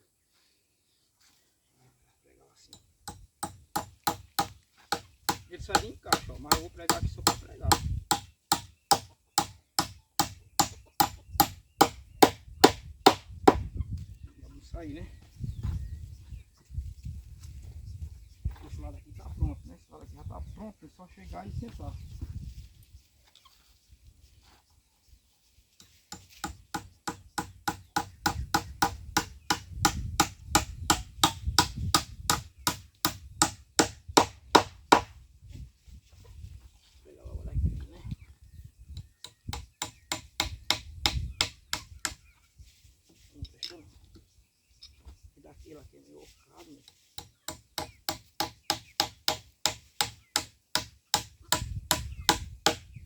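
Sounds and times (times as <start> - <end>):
hammer blows on wood: 3.1 - 13.7, 26.1 - 35.2, 39.2 - 42.2, 47.2 - 52.9.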